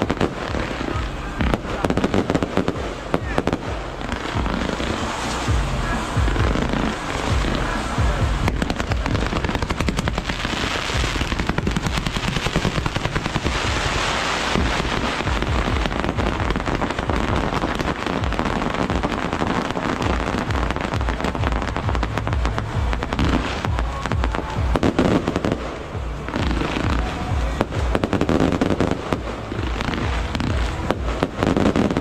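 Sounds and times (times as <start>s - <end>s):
deep booms: 0.0s - 32.0s
firecrackers rattling: 0.0s - 32.0s.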